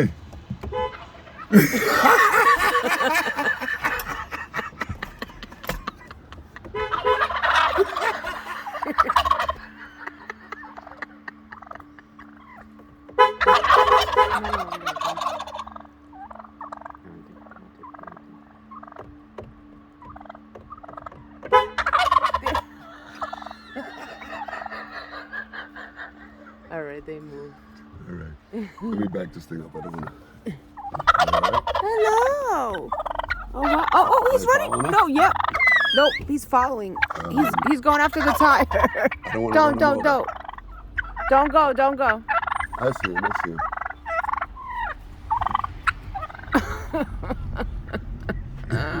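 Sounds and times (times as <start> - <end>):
turkeys gobbling: 0.0 - 49.0
steady low hum: 36.8 - 49.0.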